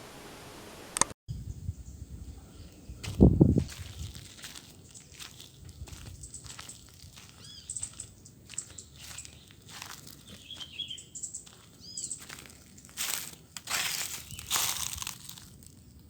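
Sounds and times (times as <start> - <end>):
bird whistles and twitter: 7.4 - 9.5, 10.2 - 12.2.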